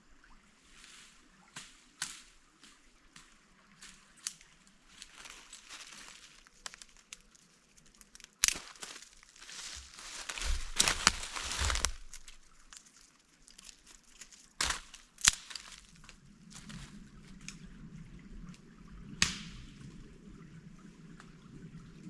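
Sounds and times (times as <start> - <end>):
rush of water: 0.0 - 22.0
gear crinkling rustle: 3.9 - 17.6.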